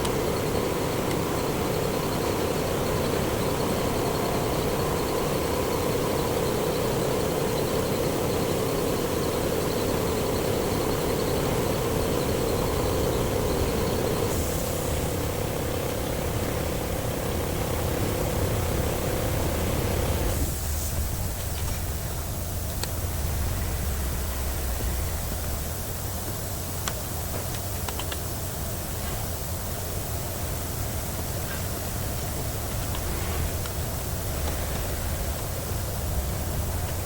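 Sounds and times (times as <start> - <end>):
machine hum with hiss: 0.0 - 37.0
low rumble: 10.8 - 26.8.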